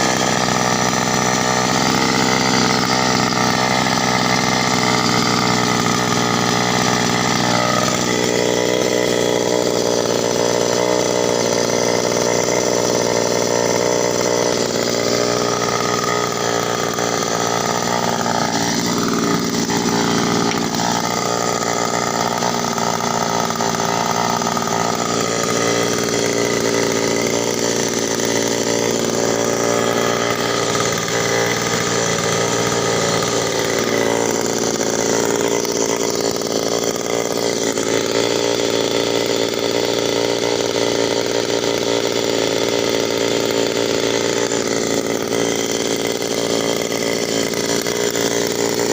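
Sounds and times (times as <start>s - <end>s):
two-stroke auger engine running hard: 0.0s - 48.9s.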